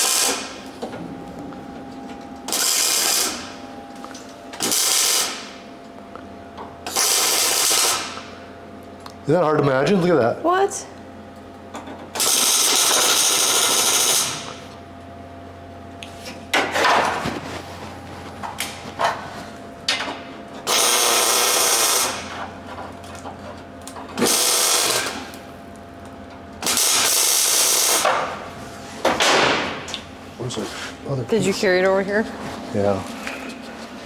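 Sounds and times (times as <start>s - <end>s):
arc welding crackling: 0.0s - 0.7s, 2.4s - 3.6s, 4.6s - 5.6s, 6.9s - 8.3s, 12.2s - 14.6s, 20.7s - 22.3s, 23.8s - 25.4s, 26.6s - 28.1s.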